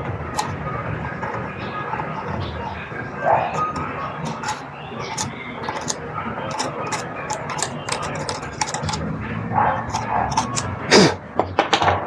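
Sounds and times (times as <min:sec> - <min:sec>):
light clicks and taps of small parts: 0:03.6 - 0:09.0, 0:09.9 - 0:10.7.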